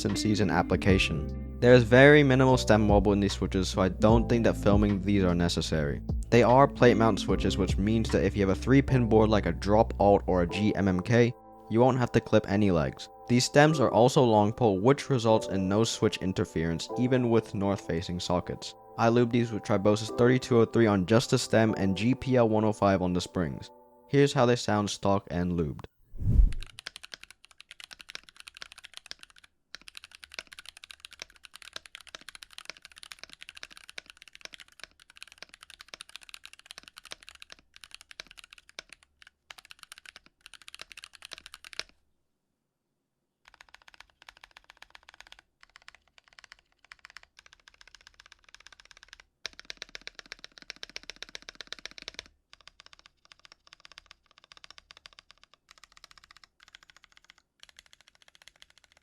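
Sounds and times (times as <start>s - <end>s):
fast typing on mechanical keyboard: 26.6s - 41.9s, 43.4s - 59.0s.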